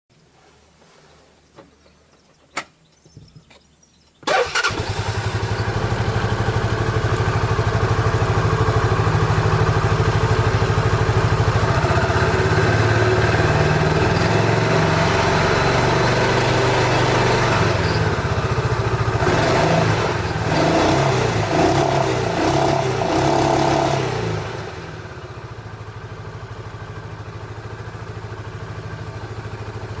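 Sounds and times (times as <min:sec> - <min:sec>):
clicks: 0:01.5 - 0:04.2
engine idling: 0:04.2 - 0:22.5, 0:24.1 - 0:30.0.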